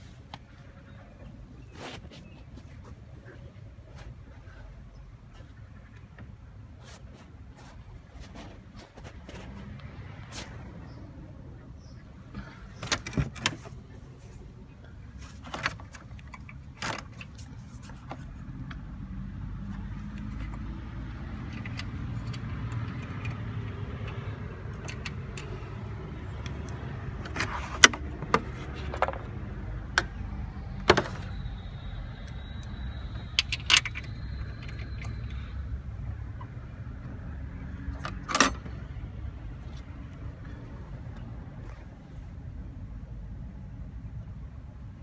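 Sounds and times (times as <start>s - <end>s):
car engine humming: 9.5s - 43.8s.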